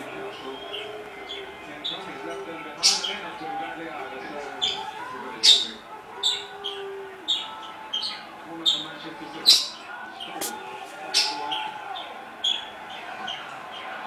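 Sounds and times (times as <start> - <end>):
kitten sneezing: 10.4 - 10.6.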